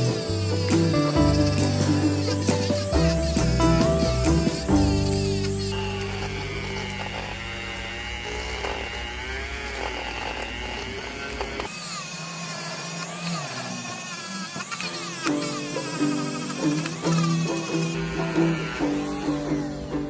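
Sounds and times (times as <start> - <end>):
high whine: 0.0 - 9.8
power tool motor hum: 2.2 - 17.2.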